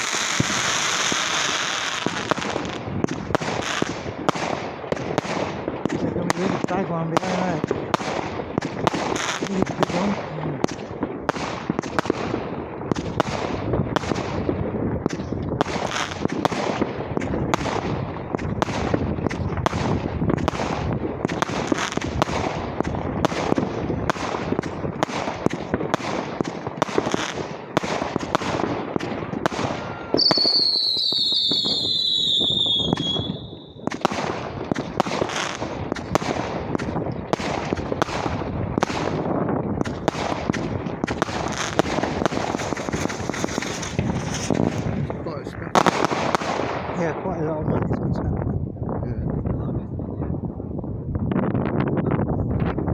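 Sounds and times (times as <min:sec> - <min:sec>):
whistling firework: 0:00.0 - 0:05.4, 0:18.4 - 0:39.2, 0:39.8 - 0:46.6
fireworks bangs and crackles: 0:00.0 - 0:52.9.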